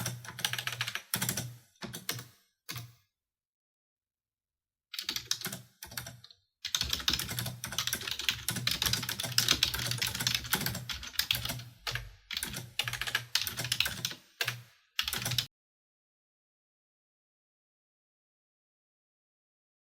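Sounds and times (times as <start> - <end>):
typing on computer keyboard: 0.0 - 3.0, 5.0 - 15.5.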